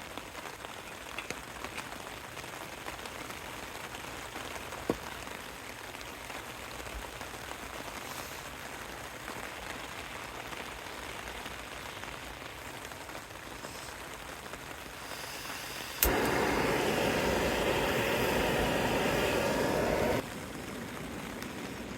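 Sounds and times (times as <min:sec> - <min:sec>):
rain falling on a tent: 0:00.0 - 0:21.9
loud steady rushing noise: 0:15.0 - 0:21.9
sharp click: 0:15.1 - 0:20.2.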